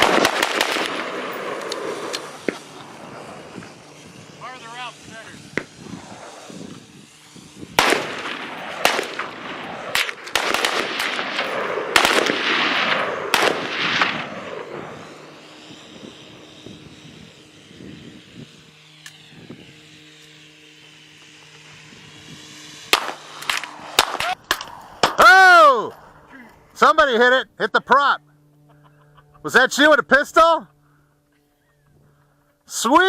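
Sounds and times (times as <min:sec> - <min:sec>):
rapid gunfire: 0:00.0 - 0:02.7, 0:07.7 - 0:15.2, 0:22.9 - 0:24.4
faint steady hum: 0:00.0 - 0:33.0.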